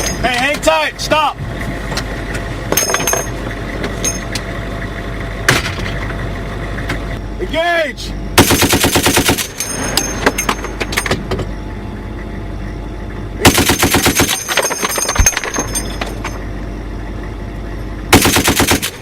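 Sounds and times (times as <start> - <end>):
metallic clinks: 0.0 - 0.4, 2.7 - 3.4, 4.0 - 4.4, 9.4 - 11.3, 14.2 - 16.5
heavy machine gun bursts: 8.4 - 10.0, 13.4 - 16.3, 18.1 - 19.0.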